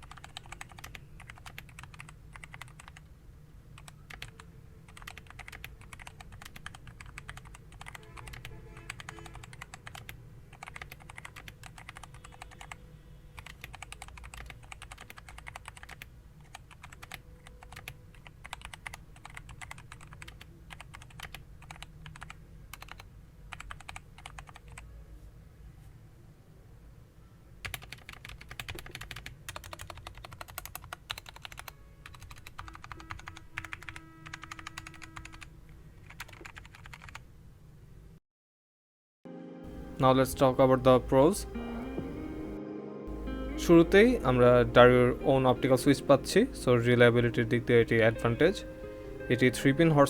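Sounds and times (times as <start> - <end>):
keyboard typing clicks: 0.0 - 3.0, 3.8 - 12.8, 13.4 - 24.8, 27.6 - 37.2.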